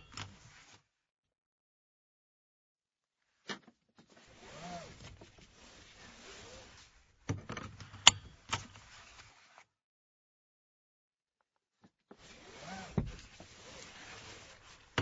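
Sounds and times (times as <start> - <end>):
seat belt webbing pulled out: 4.1 - 9.6, 12.2 - 15.0.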